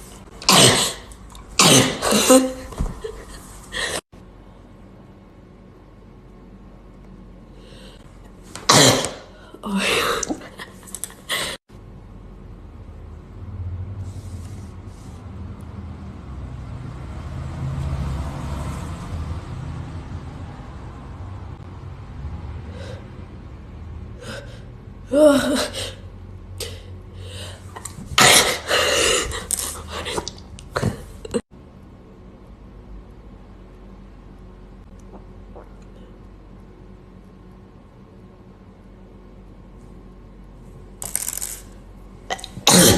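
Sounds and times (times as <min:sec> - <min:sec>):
person sneezing: 0:00.4 - 0:02.8, 0:08.6 - 0:10.6, 0:28.2 - 0:31.1, 0:42.3 - 0:42.9.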